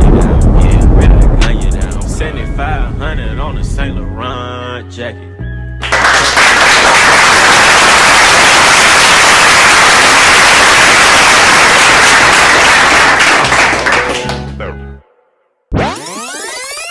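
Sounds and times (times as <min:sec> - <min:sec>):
low bass note: 0:00.0 - 0:04.7.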